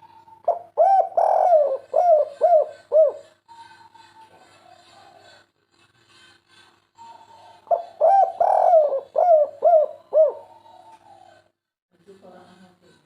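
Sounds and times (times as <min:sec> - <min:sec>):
dove cooing: 0:00.0 - 0:05.5, 0:07.0 - 0:11.5.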